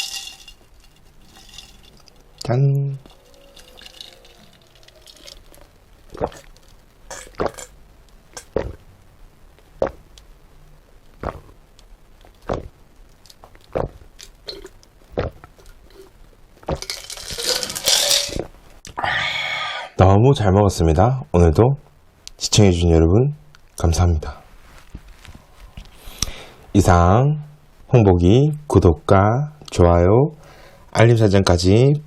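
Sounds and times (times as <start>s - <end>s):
person gulping a drink: 3.6s - 8.8s, 9.8s - 10.0s, 11.2s - 11.6s, 12.4s - 12.7s, 13.4s - 17.7s
loud breathy exhale: 19.0s - 20.0s.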